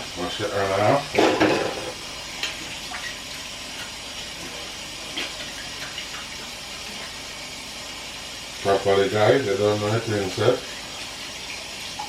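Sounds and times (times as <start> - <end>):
tap water running: 0.0 - 12.0.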